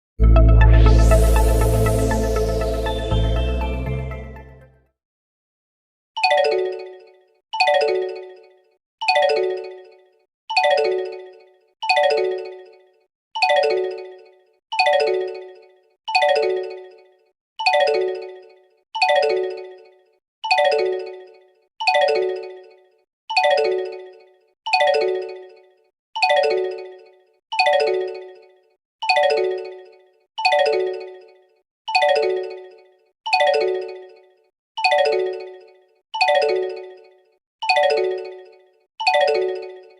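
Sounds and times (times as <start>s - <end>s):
phone ringtone chime: 0.2s - 4.6s.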